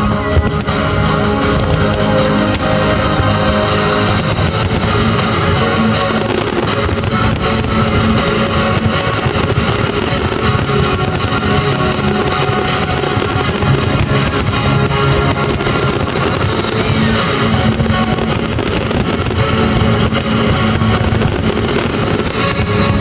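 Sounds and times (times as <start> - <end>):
fireworks bangs and crackle: 0.0 - 23.0
guitar-led music: 0.0 - 23.0.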